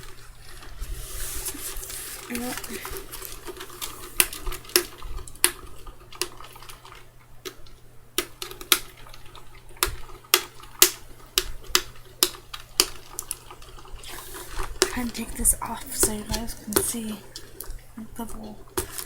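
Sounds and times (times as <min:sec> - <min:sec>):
person gulping water: 0:13.3 - 0:19.0.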